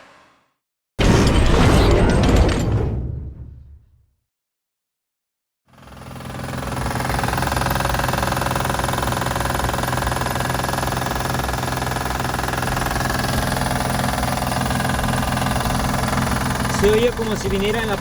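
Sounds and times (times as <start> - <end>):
car engine idling: 12.6 - 18.0.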